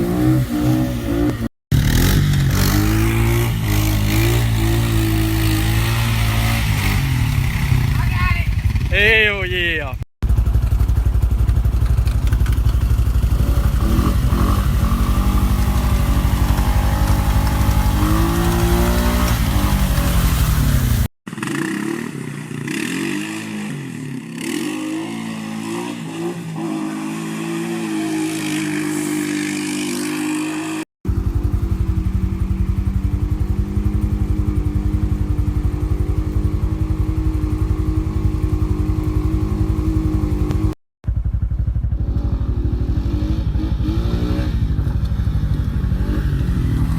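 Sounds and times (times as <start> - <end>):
atv engine revving: 0.0 - 46.9.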